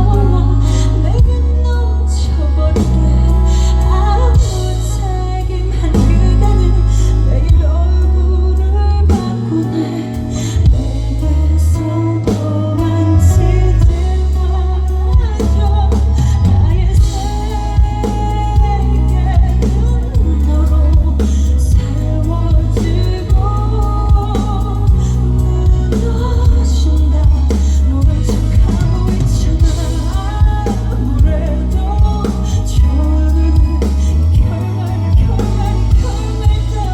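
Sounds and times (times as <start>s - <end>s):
booming bass line: 0.0s - 36.9s
drums: 0.0s - 36.9s
woman singing: 0.0s - 36.9s.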